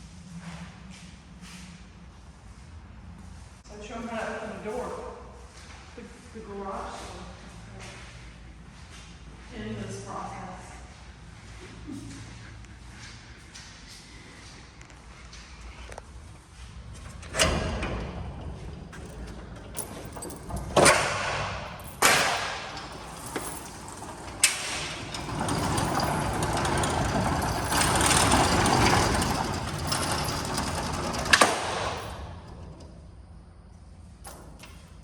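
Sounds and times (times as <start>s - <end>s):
garage door rattling up: 16.6s - 33.6s
metal garage door clanking: 16.6s - 33.7s.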